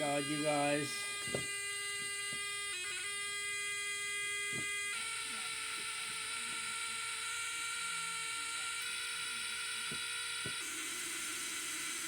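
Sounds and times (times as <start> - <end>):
high-pitched electronic buzz: 0.0 - 12.0.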